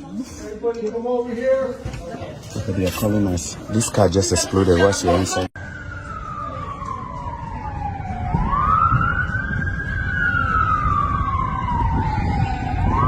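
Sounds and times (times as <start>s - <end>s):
emergency vehicle siren wailing: 5.2s - 13.0s.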